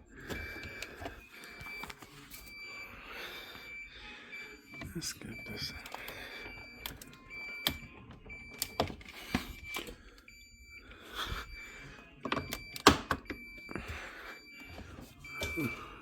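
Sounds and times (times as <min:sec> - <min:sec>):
short electronic beeps: 0:03.6 - 0:10.8, 0:12.4 - 0:16.0.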